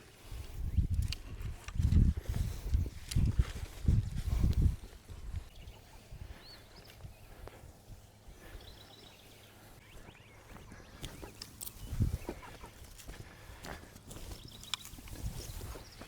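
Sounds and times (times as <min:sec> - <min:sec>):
faint bird chirps: 0:05.4 - 0:12.9.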